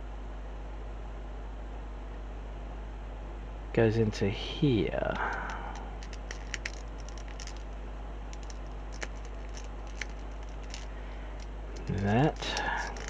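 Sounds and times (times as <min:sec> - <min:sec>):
steady low hum: 0:00.0 - 0:13.0
plastic parts clicking: 0:05.1 - 0:07.7, 0:08.3 - 0:13.0.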